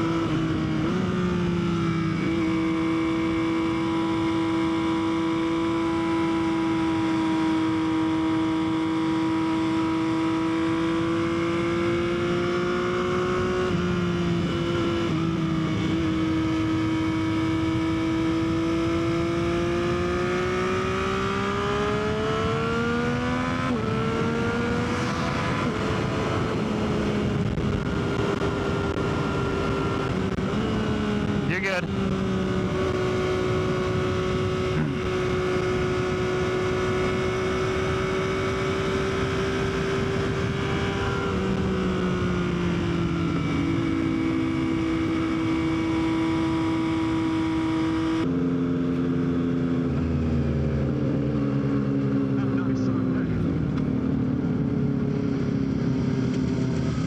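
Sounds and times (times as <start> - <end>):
motorcycle engine cruising: 0.0 - 57.0
wind rush: 23.5 - 29.6.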